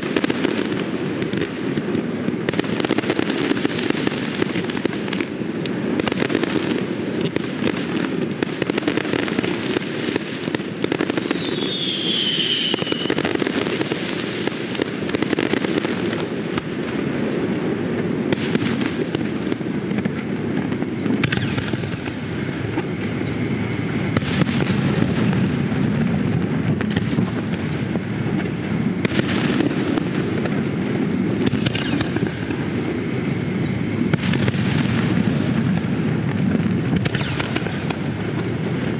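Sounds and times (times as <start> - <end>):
fireworks bangs and crackling: 0.0 - 38.9
firework falling whistle: 10.8 - 14.2, 20.6 - 25.8, 31.4 - 35.8, 36.8 - 38.8.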